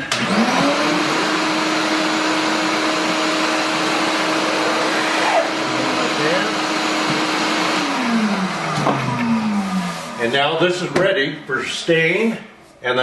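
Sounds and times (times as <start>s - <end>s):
electric motor whining: 0.1s - 10.3s.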